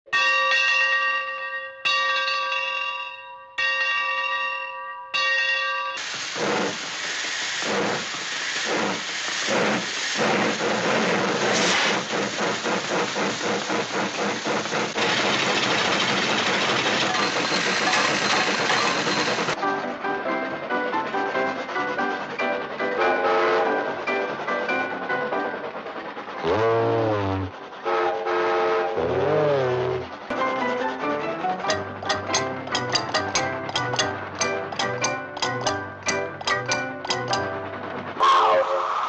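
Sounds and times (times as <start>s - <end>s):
rushing hiss with chugging pulse: 6.0s - 39.0s
bell ringing: 17.0s - 19.6s, 31.7s - 37.6s.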